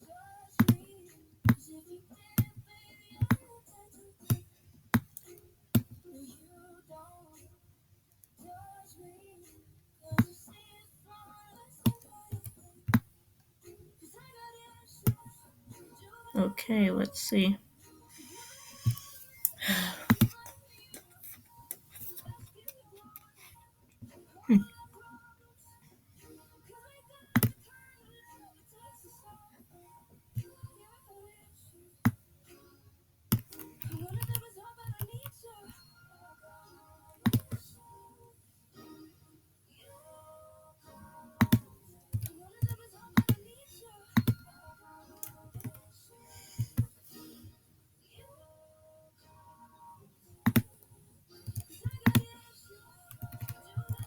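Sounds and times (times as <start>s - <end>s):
faint music: 0.0s - 54.0s
faint song with singing: 0.0s - 54.0s
computer mouse clicking: 18.3s - 20.5s, 27.3s - 27.6s, 33.3s - 35.3s, 37.2s - 37.6s, 41.4s - 43.5s, 44.2s - 44.5s, 45.1s - 45.8s, 46.5s - 46.9s, 50.4s - 50.8s, 51.4s - 52.4s, 53.0s - 54.0s.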